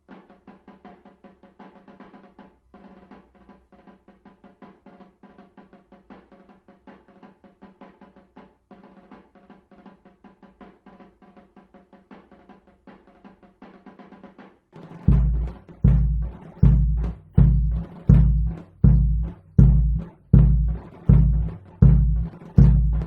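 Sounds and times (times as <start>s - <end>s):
rapid drumming: 0.0s - 23.0s
steady low tone: 15.1s - 23.0s.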